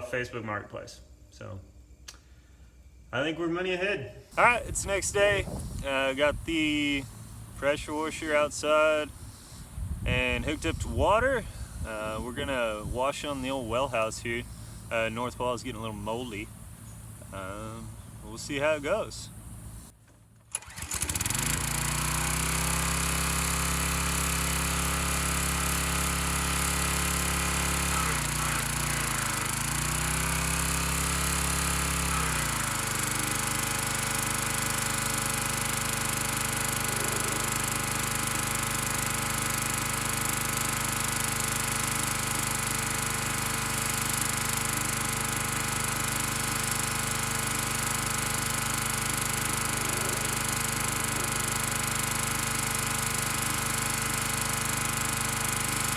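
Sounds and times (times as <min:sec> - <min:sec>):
pressure washer engine running: 0:04.3 - 0:19.9, 0:20.6 - 0:55.9
steady hiss: 0:04.3 - 0:20.0.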